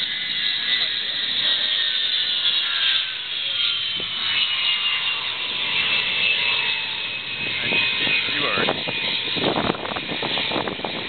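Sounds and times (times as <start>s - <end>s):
jet engines whining: 0.0s - 11.0s
steady rushing noise: 0.0s - 11.0s.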